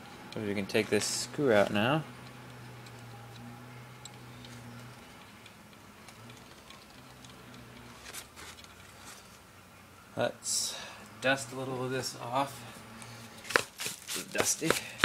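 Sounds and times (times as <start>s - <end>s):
low steady hum: 0.0s - 14.1s
rustling scrape: 7.9s - 9.4s, 13.2s - 14.4s.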